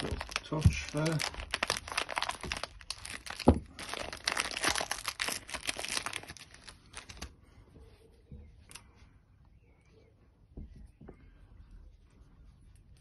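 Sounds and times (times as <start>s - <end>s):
plastic packaging crinkling: 0.0s - 7.4s
faint handling sounds: 5.5s - 13.0s.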